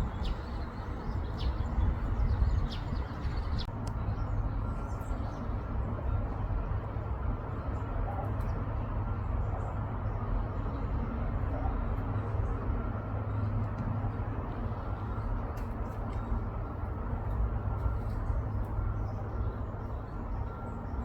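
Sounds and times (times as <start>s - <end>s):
bird chirping: 0.0s - 4.3s.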